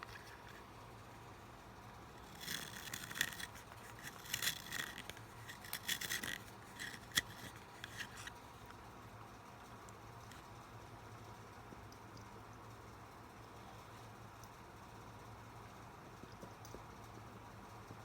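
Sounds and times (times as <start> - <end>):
pencil clicks as turned: 2.2 - 8.3
sharpener blade scraping pencil wood: 2.2 - 8.3.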